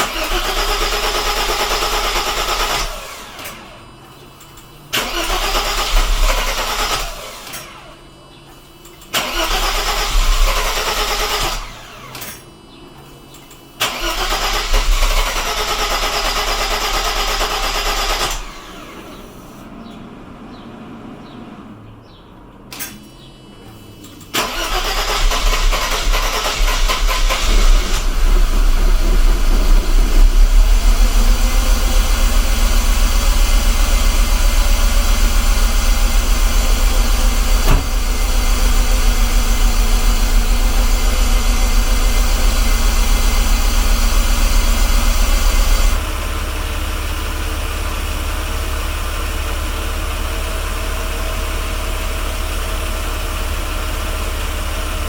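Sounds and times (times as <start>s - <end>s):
car engine idling: 14.0s - 55.0s
sharp click: 22.7s - 24.4s.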